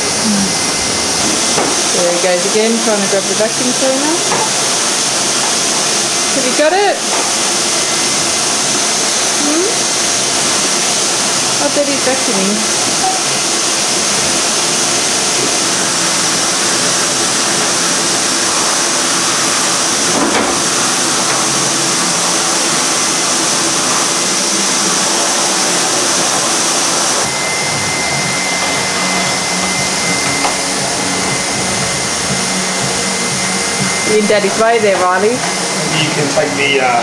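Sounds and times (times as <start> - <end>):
vacuum cleaner running: 0.0 - 37.0
steady high whistle: 24.5 - 35.0.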